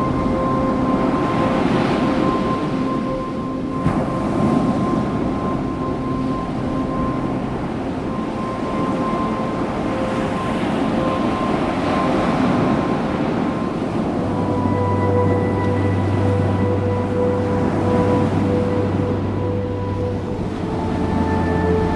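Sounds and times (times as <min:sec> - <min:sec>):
ambient drone music: 0:00.0 - 0:21.9
steady rushing noise: 0:00.0 - 0:21.9.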